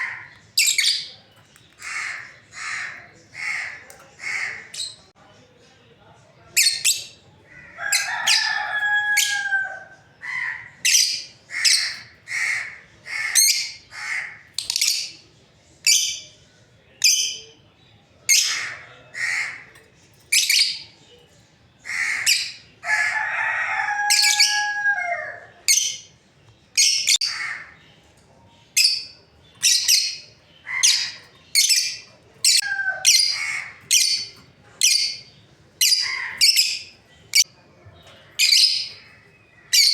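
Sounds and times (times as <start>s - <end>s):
lovebirds shrill chirps: 0.0s - 5.1s, 6.6s - 15.2s, 24.1s - 39.9s.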